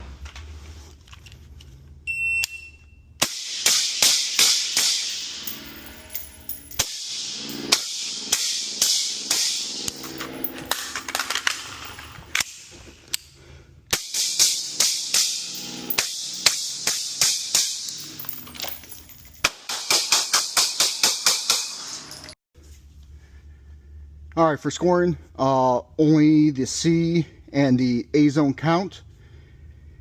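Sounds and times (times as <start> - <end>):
electronic timer beep: 2.1 - 3.0
airsoft gun shots: 3.2 - 5.4, 6.8 - 9.9.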